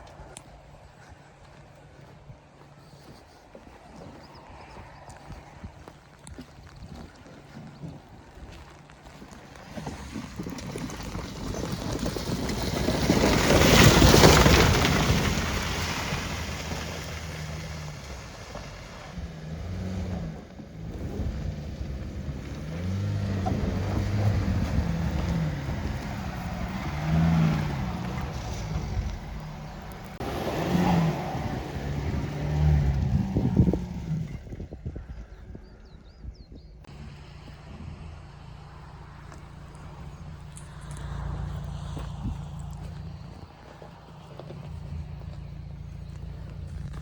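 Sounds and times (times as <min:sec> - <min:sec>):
mud and water splashing: 0:02.8 - 0:34.4
car engine revving: 0:09.7 - 0:34.6, 0:36.9 - 0:47.0.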